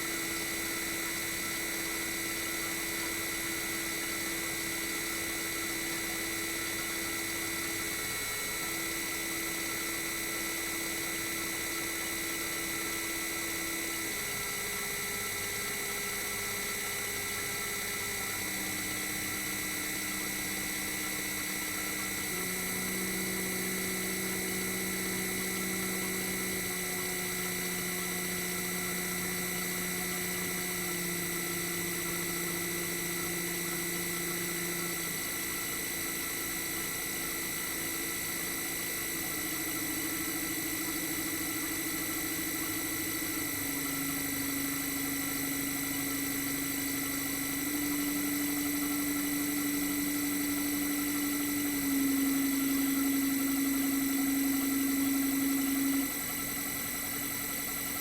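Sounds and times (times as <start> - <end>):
compressor humming: 17.9 - 58.0.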